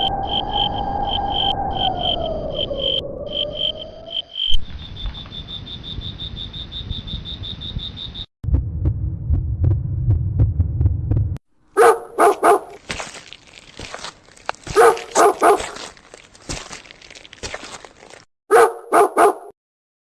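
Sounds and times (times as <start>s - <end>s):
low rumble with ticks: 8.4s - 11.4s
dog barking: 11.8s - 12.8s, 14.7s - 15.9s, 18.5s - 19.6s.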